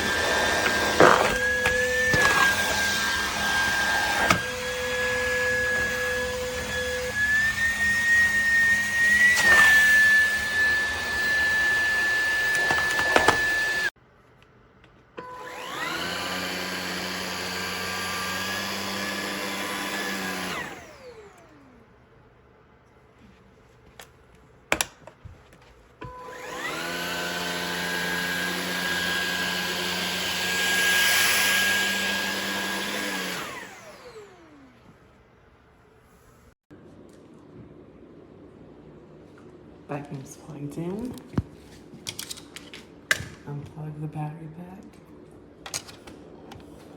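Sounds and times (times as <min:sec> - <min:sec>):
stick vacuum motor whining: 0:00.0 - 0:14.0, 0:15.2 - 0:21.8, 0:26.0 - 0:35.1.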